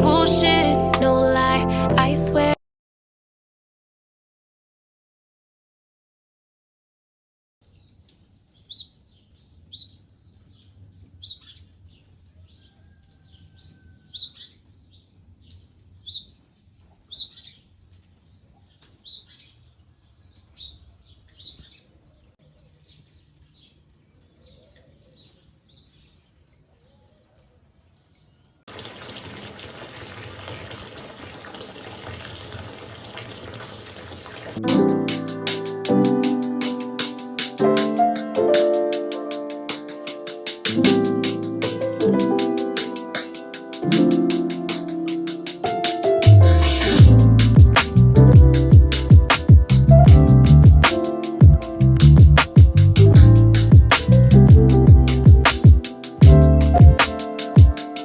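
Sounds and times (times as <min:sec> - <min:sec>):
bird chirping: 0:07.7 - 0:28.5
water running from a tap: 0:28.7 - 0:34.6.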